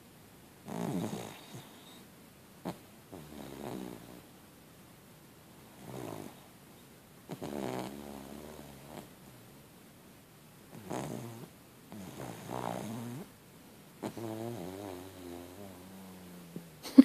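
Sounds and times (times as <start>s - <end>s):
dog snoring: 0.6s - 2.0s, 2.6s - 4.3s, 5.7s - 6.5s, 7.3s - 9.4s, 10.7s - 13.3s, 14.0s - 16.8s.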